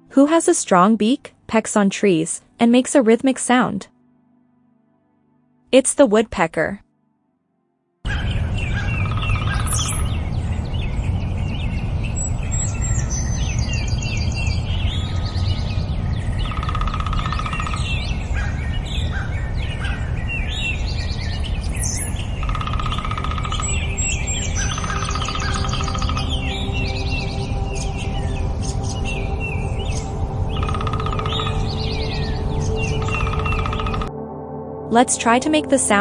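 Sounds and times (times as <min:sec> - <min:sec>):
birds chirping and singing: 0:08.1 - 0:34.1
woodpecker drumming: 0:08.7 - 0:10.2, 0:16.4 - 0:18.6, 0:21.8 - 0:34.1.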